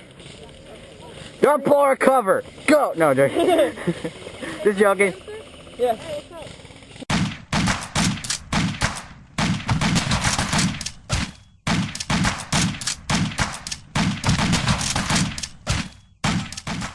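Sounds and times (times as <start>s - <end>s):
rapid gunfire bursts: 7.0s - 16.9s.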